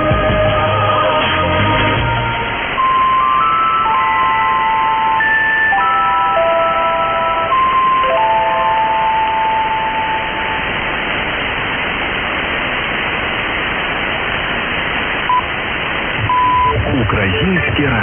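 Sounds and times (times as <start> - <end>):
shortwave interval signal tones: 0.0 - 18.0
radio static hiss: 7.4 - 18.0
short beep: 16.3 - 16.9.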